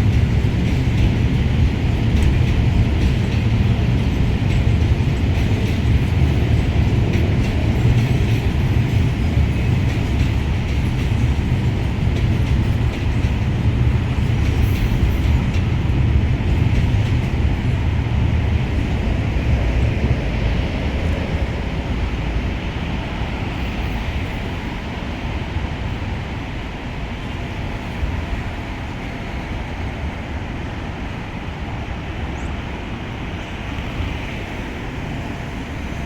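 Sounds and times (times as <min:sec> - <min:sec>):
train wheels rolling on track: 0:00.0 - 0:36.0.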